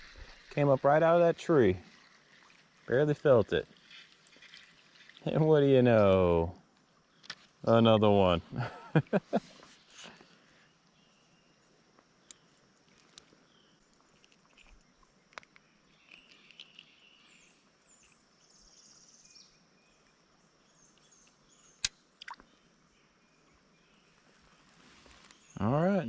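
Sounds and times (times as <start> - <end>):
stream ambience: 0.0 - 26.0
faint bird chirps: 8.6 - 26.0.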